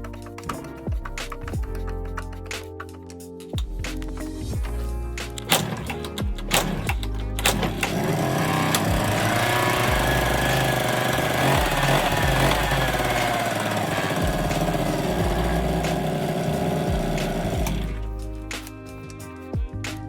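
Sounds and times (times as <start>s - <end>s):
two-stroke engine idling: 6.6s - 18.0s.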